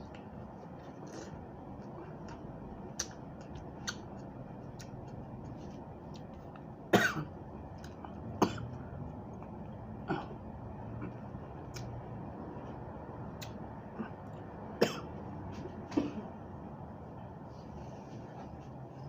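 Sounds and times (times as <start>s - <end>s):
person chewing raw vegetables: 0.0s - 6.8s.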